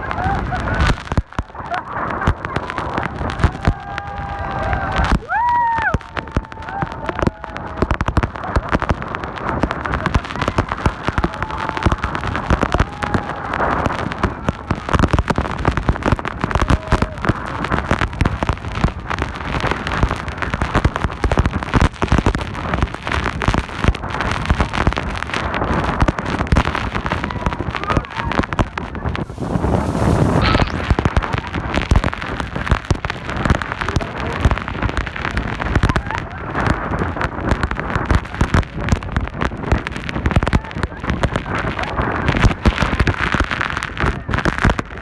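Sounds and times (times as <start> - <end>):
faint voices: 0.0 - 18.4, 25.2 - 38.0, 38.6 - 45.0
wind blasting microphone: 25.5 - 36.0
waterfall spray rushing: 29.2 - 31.2.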